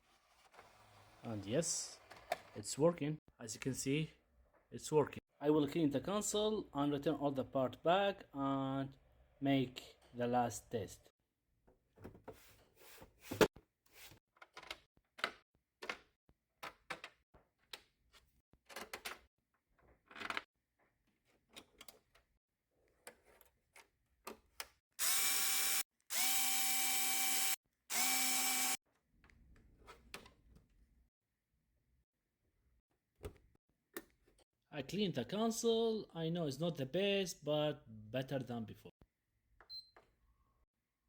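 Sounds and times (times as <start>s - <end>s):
electric screwdriver motor: 25.0s - 28.8s.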